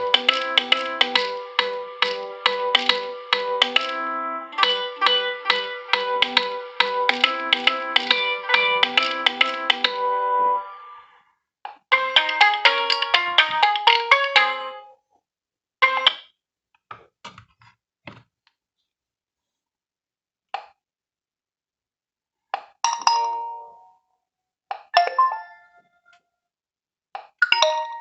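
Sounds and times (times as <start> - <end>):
phone ringtone melody: 0.0 - 11.0, 11.9 - 14.9, 25.0 - 25.9, 27.4 - 28.0
short tones and chimes: 25.0 - 26.0.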